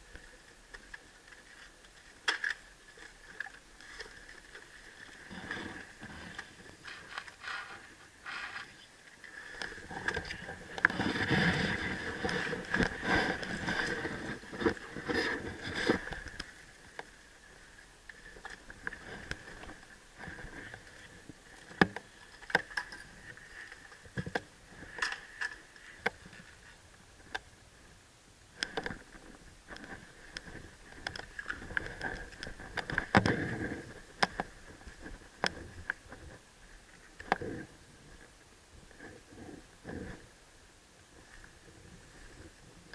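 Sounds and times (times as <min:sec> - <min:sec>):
rustling: 0:00.1 - 0:26.8.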